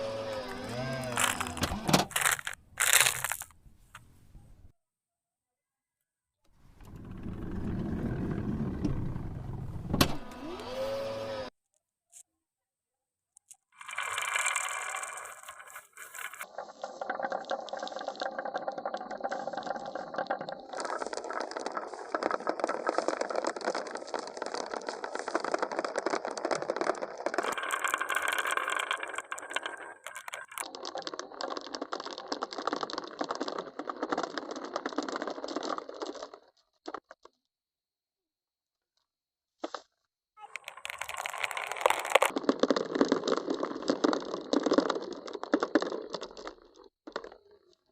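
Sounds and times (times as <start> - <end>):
marbles rattling on wooden tracks: 0.7 - 3.5, 13.8 - 37.3, 40.4 - 47.8.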